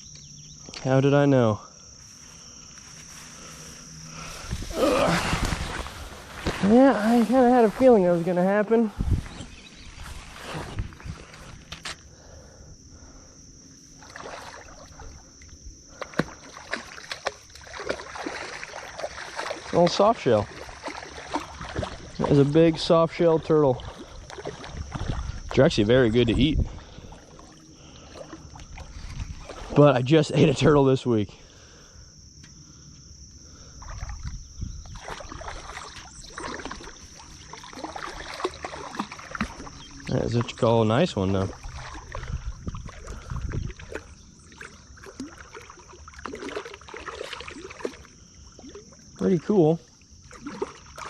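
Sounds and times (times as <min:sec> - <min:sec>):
insect trill: 0:00.0 - 0:51.0
water splashing and sloshing: 0:02.0 - 0:12.1, 0:13.6 - 0:30.8, 0:33.6 - 0:51.0.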